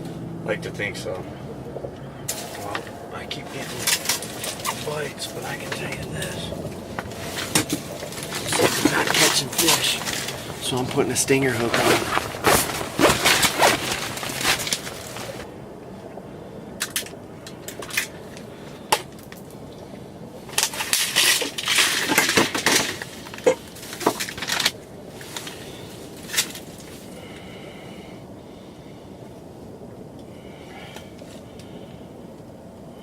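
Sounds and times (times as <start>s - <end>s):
fishing tackle crinkling rustle: 1.1s - 15.5s, 16.7s - 27.4s.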